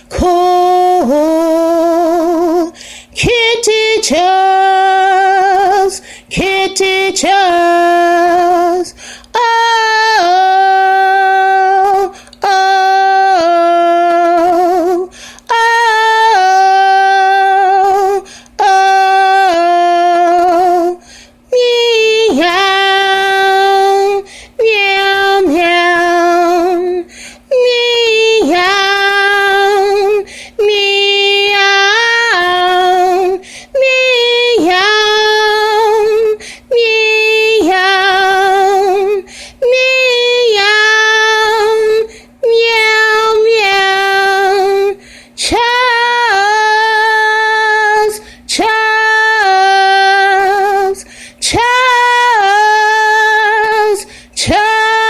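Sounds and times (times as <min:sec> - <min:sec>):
woman singing unaccompanied: 0:00.0 - 0:55.0
singer breathing: 0:02.7 - 0:03.2, 0:06.0 - 0:06.3, 0:08.9 - 0:09.3, 0:15.1 - 0:15.5, 0:18.2 - 0:18.6, 0:21.0 - 0:21.5, 0:24.2 - 0:24.6, 0:27.1 - 0:27.5, 0:30.2 - 0:30.6, 0:33.4 - 0:33.8, 0:36.4 - 0:36.7, 0:39.2 - 0:39.6, 0:45.0 - 0:45.4, 0:48.2 - 0:48.5, 0:51.0 - 0:51.4, 0:54.0 - 0:54.4.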